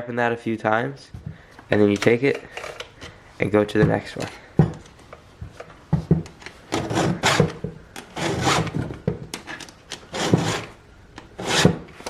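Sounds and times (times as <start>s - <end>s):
file rasping on chainsaw chain: 11.4s - 11.8s.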